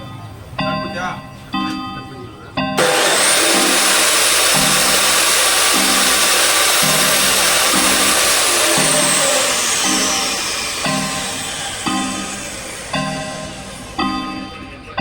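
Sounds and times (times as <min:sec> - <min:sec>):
electric power tool whining: 0:02.8 - 0:14.7.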